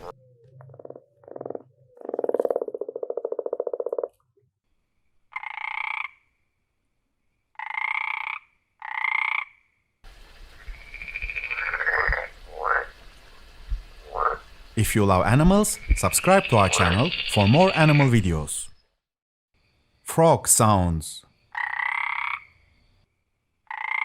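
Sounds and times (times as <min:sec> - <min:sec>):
frog buzzy croaks: 0:00.0 - 0:04.2, 0:05.3 - 0:06.2, 0:07.6 - 0:09.7, 0:10.6 - 0:12.9, 0:14.0 - 0:14.5, 0:15.8 - 0:18.1, 0:21.5 - 0:22.6, 0:23.7 - 0:24.0
frog pulsed trill: 0:15.8 - 0:18.1.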